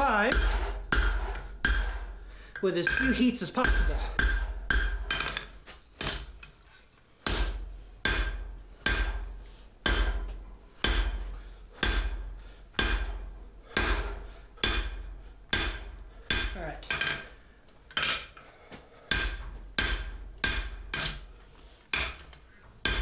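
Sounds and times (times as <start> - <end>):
hammer striking metal on anvil: 0.0 - 6.4, 7.2 - 17.2, 19.1 - 21.3, 21.9 - 22.2.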